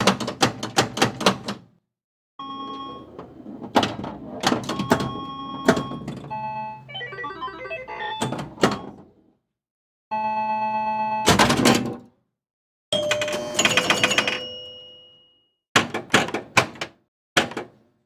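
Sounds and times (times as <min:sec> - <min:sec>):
electronic tones shifting pitch: 0:06.8 - 0:08.6.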